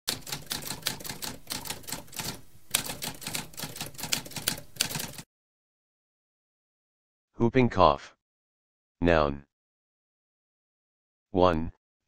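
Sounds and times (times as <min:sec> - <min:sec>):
typewriter keys clacking: 0:00.1 - 0:05.2.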